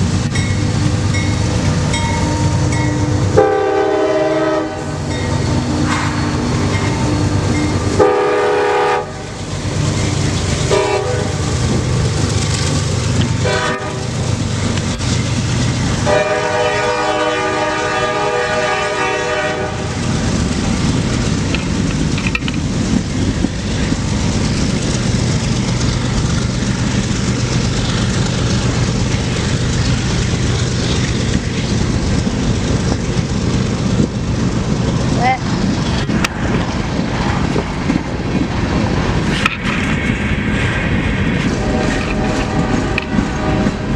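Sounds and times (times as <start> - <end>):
train cars rumbling past: 0.0 - 43.9
locomotive horn blasts: 2.2 - 5.1, 7.9 - 9.4, 10.7 - 11.4, 13.4 - 14.1, 16.0 - 20.0, 41.5 - 43.9.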